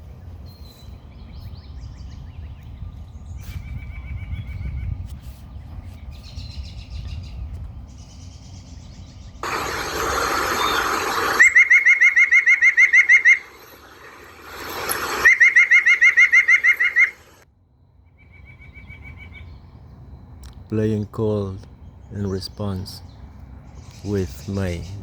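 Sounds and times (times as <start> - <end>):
faint higher bird calls: 0.4 - 17.4
rushing noise: 9.4 - 11.7.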